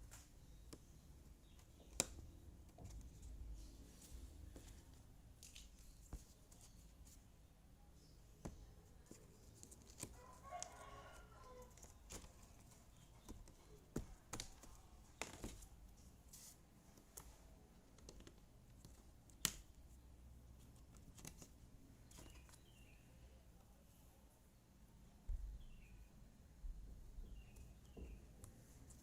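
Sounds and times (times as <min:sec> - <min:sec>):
distant rooster crowing: 0:10.1 - 0:11.9.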